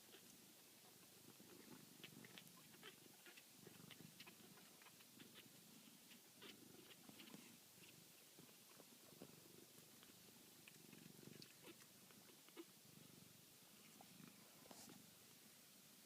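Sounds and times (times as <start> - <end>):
small irregular clicks: 0.0 - 12.7
kitten purring: 0.0 - 15.3.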